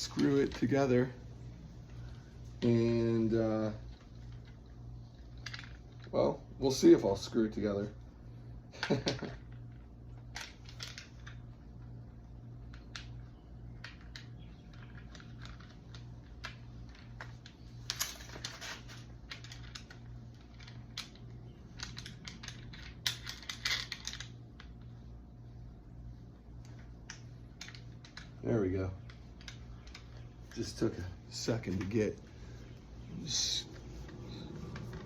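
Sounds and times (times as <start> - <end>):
steady low hum: 0.0 - 35.0
clicks and rattles of parts: 3.8 - 6.2, 8.8 - 11.9, 12.6 - 24.9, 26.6 - 28.4, 29.0 - 32.8, 33.4 - 35.0.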